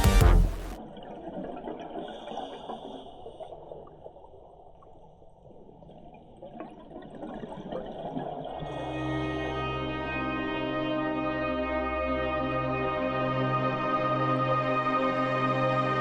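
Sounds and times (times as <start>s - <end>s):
underwater gurgling hiss: 2.0s - 3.7s.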